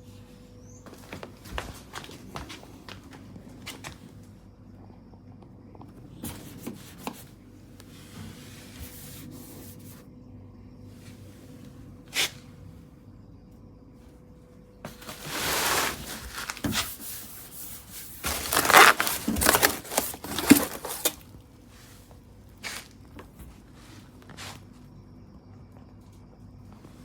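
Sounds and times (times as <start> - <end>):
scraping and crinkling handling noises: 14.8 - 24.7.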